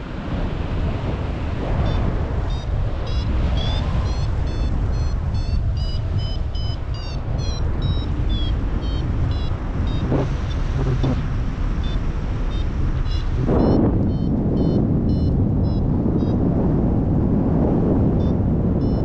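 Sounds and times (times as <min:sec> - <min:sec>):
wind noise on microphone: 0:00.0 - 0:19.0
variometer beeping chirps: 0:01.8 - 0:11.2, 0:11.8 - 0:16.5, 0:18.1 - 0:19.0.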